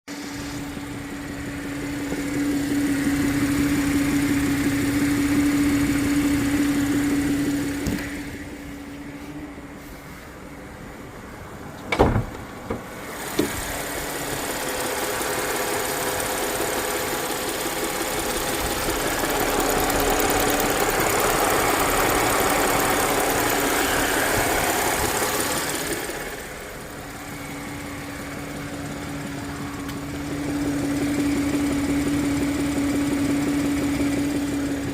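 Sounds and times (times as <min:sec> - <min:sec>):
car engine knocking: 0:12.3 - 0:34.9.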